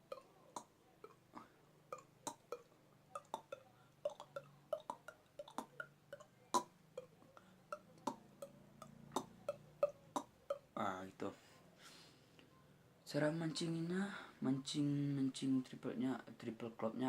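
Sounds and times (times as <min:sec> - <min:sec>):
beatboxer tongue clops: 0:01.9 - 0:10.7.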